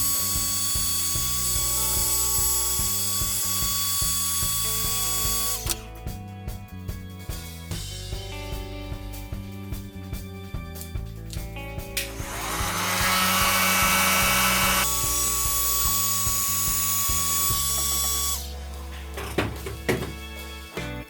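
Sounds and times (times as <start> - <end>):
small high-speed power tool: 0.0 - 5.8, 12.1 - 18.5
background music: 0.0 - 21.0.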